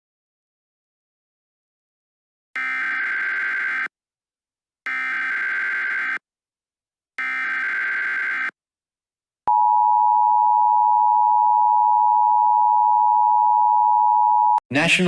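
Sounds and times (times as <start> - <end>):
two-tone alarm: 2.6 - 3.9, 4.9 - 6.2, 7.2 - 8.6, 9.5 - 14.6.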